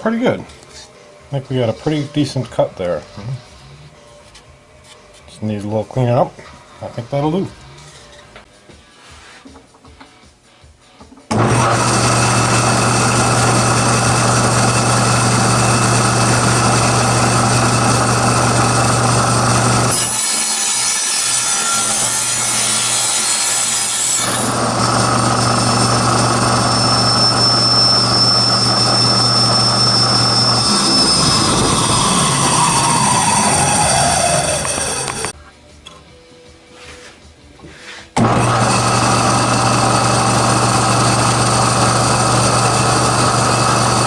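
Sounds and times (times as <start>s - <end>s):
table saw running: 11.3s - 35.3s, 38.2s - 44.0s
saw blade cutting aluminum: 17.2s - 35.3s.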